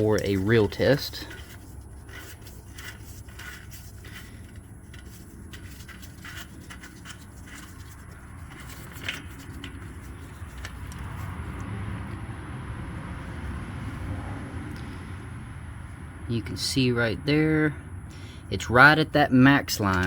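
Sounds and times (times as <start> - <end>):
dipstick scraping and clicking: 0.0 - 11.7, 19.7 - 20.0.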